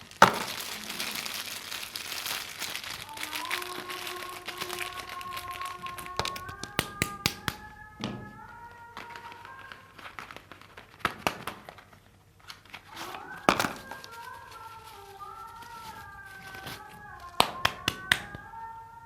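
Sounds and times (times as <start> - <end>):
wrapper crinkling: 0.0 - 7.7, 8.4 - 18.4
wrapper snap: 0.0 - 7.7, 8.8 - 18.4
crisp clicks and taps: 4.2 - 7.6.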